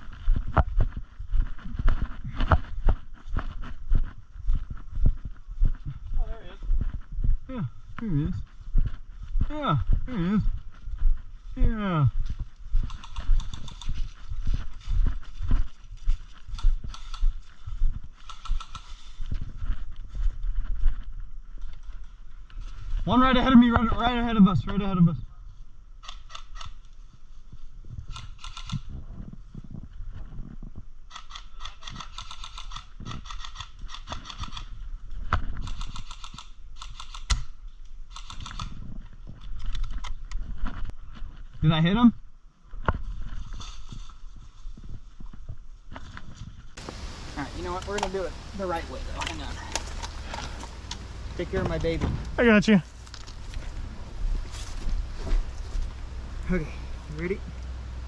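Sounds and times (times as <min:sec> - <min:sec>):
footsteps on ground: 0:00.0 - 0:24.9, 0:26.6 - 0:58.0
equipment rattling: 0:12.8 - 0:14.8, 0:48.3 - 0:56.0.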